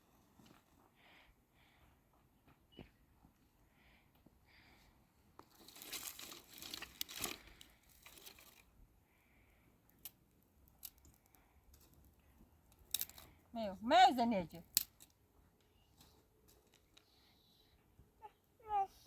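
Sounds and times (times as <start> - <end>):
crinkling and rustling: 5.4 - 8.8.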